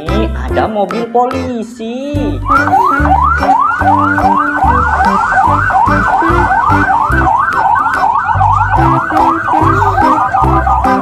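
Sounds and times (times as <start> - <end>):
music with bass beat: 0.0 - 11.0
police siren wailing: 2.4 - 11.0.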